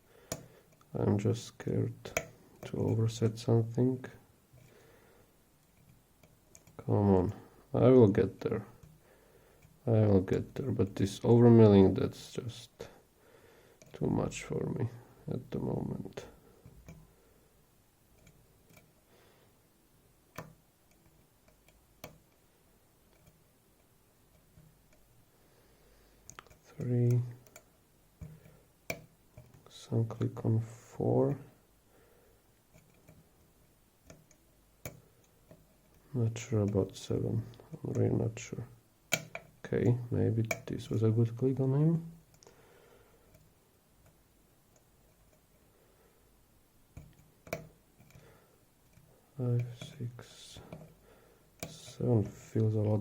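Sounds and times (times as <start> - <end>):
lock-picking clicks: 0.2 - 0.9, 2.0 - 3.8, 5.6 - 7.4, 16.7 - 17.1, 20.3 - 25.2, 26.3 - 29.7, 32.7 - 38.0, 39.1 - 41.0, 46.9 - 51.0
lock pick ticking: 0.3 - 0.9, 2.0 - 3.1, 5.7 - 6.8, 16.7 - 17.1, 20.4 - 22.4, 26.3 - 29.7, 39.1 - 40.8, 47.0 - 48.3.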